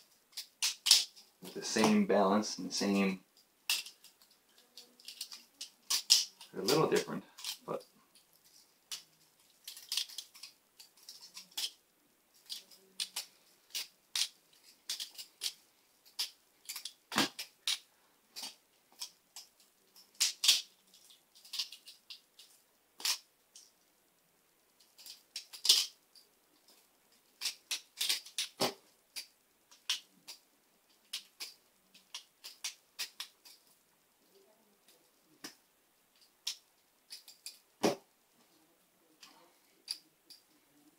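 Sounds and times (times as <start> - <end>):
butterfly knives clicking: 25.0 - 26.0, 31.1 - 33.6.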